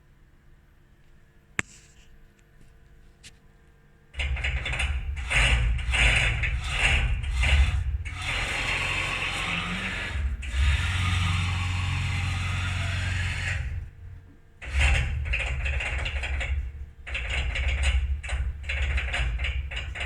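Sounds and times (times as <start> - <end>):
mill axis ratcheting noise: 4.2 - 20.0.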